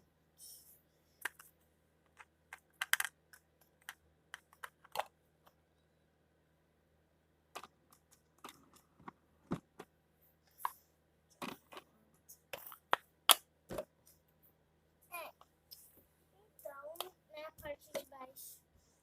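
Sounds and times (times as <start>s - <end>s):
toy items clicking and knocking: 1.2s - 1.5s, 2.1s - 5.1s, 7.6s - 9.6s.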